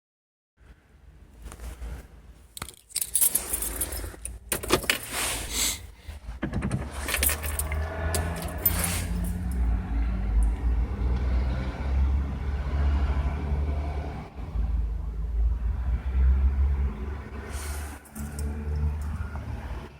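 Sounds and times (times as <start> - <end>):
keys jangling: 2.6 - 5.2, 7.0 - 9.6, 18.0 - 18.5
diesel engine cranking and starting: 6.2 - 11.5.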